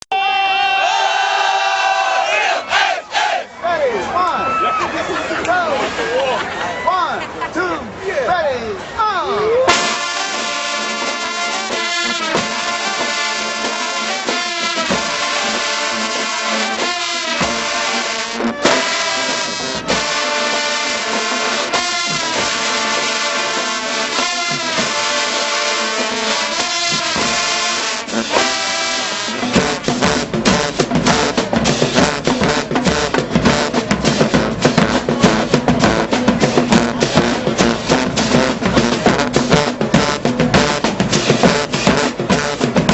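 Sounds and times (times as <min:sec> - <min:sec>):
brass band chords: 0:09.6 - 0:42.9
drumline fast beat: 0:09.7 - 0:42.9.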